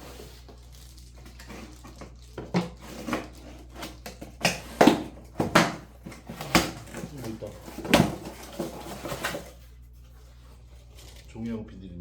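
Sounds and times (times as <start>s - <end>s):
cardboard box knocks and rustles: 2.6s - 9.5s.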